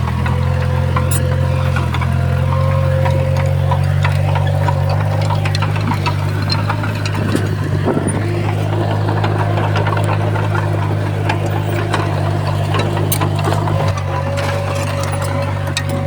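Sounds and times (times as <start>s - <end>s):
heavy diesel engine droning: 0.0s - 16.0s
metallic clicks and clanks: 0.1s - 16.0s.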